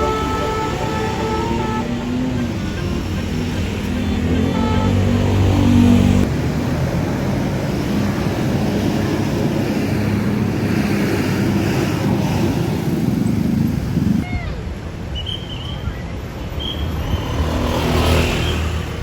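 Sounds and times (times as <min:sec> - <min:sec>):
bus engine running: 0:00.0 - 0:14.2.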